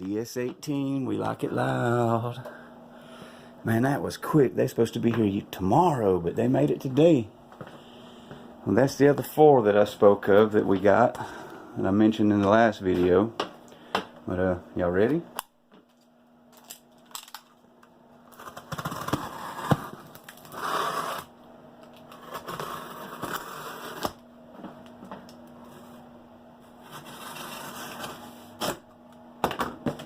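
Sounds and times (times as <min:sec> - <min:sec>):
cardboard tearing and rustling: 0:18.3 - 0:21.3.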